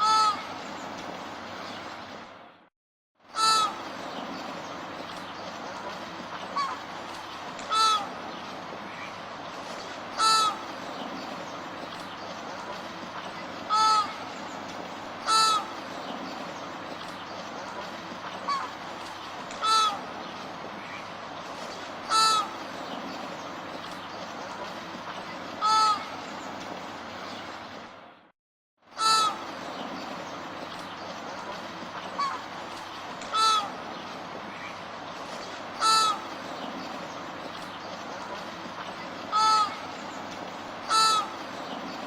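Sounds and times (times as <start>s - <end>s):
flamingos honking: 0.0s - 0.5s, 3.4s - 3.9s, 7.6s - 8.2s, 10.1s - 10.7s, 13.7s - 14.3s, 15.2s - 15.9s, 19.6s - 20.2s, 22.0s - 22.8s, 25.6s - 26.2s, 29.0s - 29.5s, 33.3s - 34.8s, 35.7s - 36.4s, 39.3s - 40.0s, 40.8s - 41.5s.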